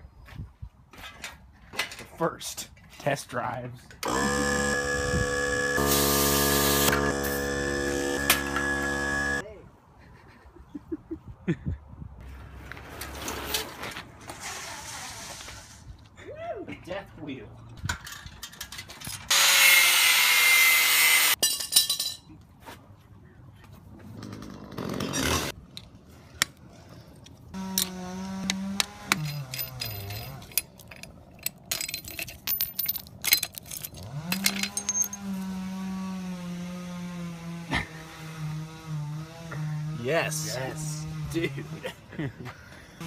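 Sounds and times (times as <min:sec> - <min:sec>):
power tool cutting with whine: 0:04.0 - 0:09.4
small engine running: 0:04.0 - 0:09.4.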